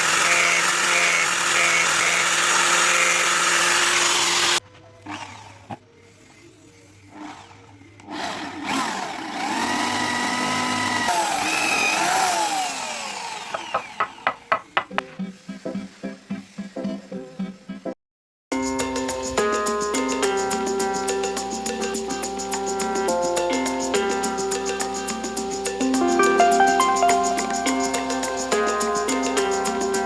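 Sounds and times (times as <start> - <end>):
electric power tool running: 0.0 - 14.9
shifting sounds with gliding tones: 25.9 - 29.8.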